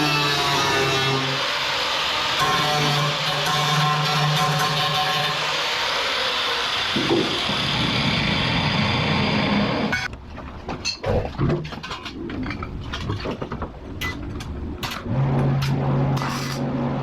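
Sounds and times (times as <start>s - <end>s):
rushing power tool: 0.0s - 10.1s.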